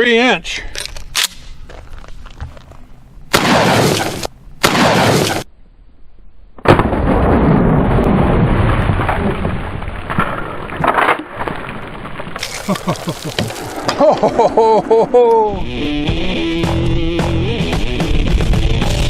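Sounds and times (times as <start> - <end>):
shotgun blast: 3.3 - 5.5.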